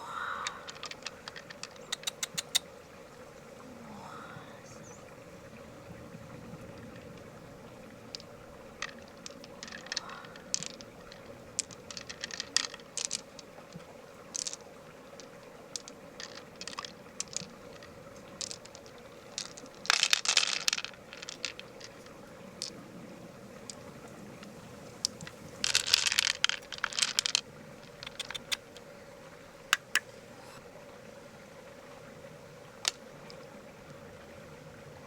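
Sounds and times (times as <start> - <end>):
faint steady hum: 0.0 - 35.0
shell clicks and scrapes: 28.0 - 28.6.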